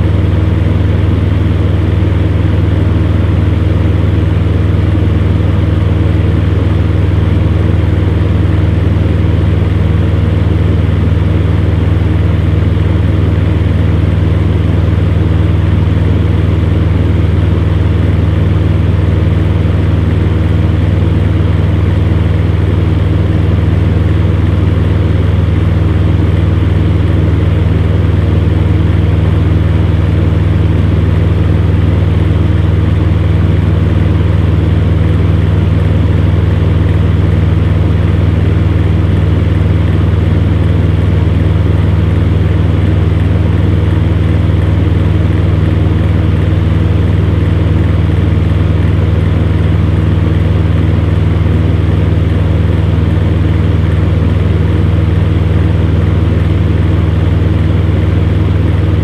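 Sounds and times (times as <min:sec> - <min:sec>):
electric fan humming: 0:00.0 - 0:59.0.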